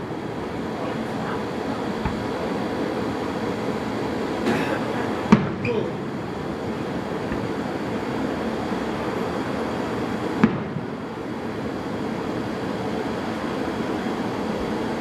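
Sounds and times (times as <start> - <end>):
steady background rumble: 0.0 - 15.0
firework bang: 1.9 - 2.6, 4.5 - 5.9, 7.2 - 8.0, 10.4 - 11.0.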